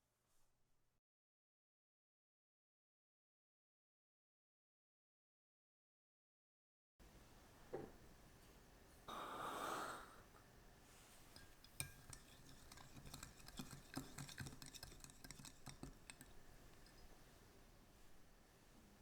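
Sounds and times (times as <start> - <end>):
utensils and bowls clinking: 11.3 - 17.2.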